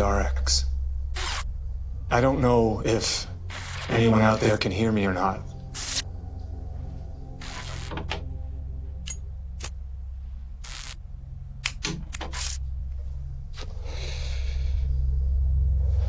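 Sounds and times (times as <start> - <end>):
static hiss: 1.2 - 1.5, 3.5 - 4.5, 5.7 - 6.0, 7.4 - 8.1, 10.6 - 11.0
radio static hum: 3.5 - 4.7, 5.7 - 6.0
static crackle and clicks: 10.6 - 11.0.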